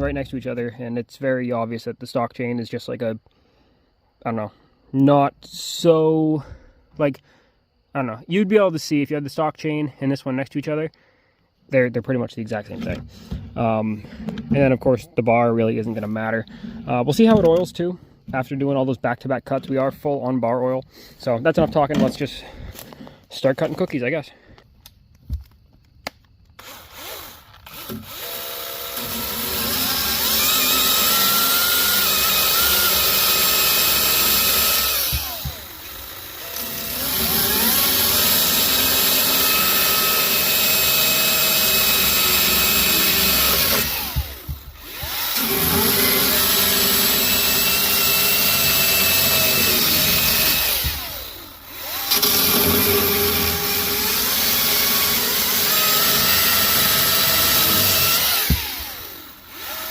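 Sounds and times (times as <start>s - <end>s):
battery chainsaw cutting log: 26.6s - 59.9s.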